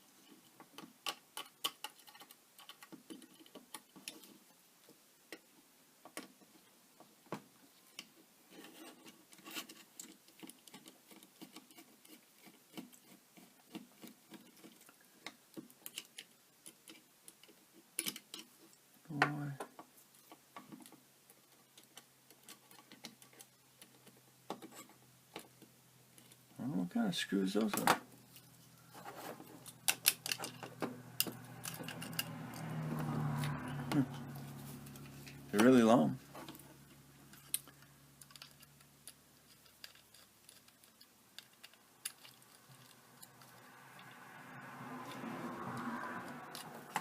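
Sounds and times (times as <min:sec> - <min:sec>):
small screws and plastic clicking: 0:00.2 - 0:06.6, 0:07.9 - 0:18.8, 0:19.6 - 0:26.5, 0:28.3 - 0:33.5, 0:37.3 - 0:44.2
soft rustle: 0:19.8 - 0:30.8, 0:31.4 - 0:47.0.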